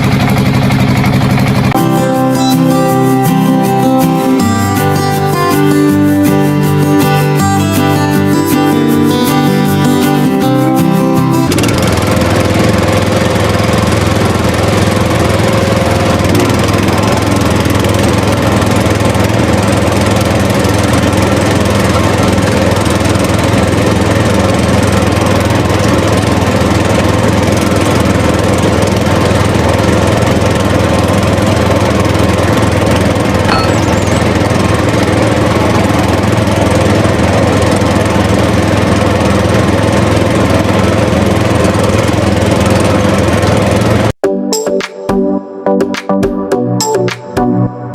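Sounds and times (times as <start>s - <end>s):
small engine droning: 0.0s - 44.2s.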